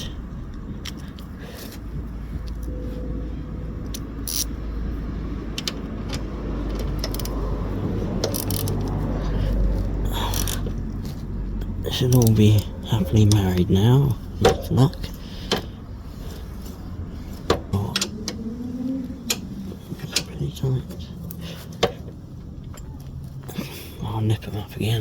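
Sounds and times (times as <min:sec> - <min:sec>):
low rumble: 0:00.0 - 0:24.0
metal tools scraping and clicking: 0:03.9 - 0:04.6.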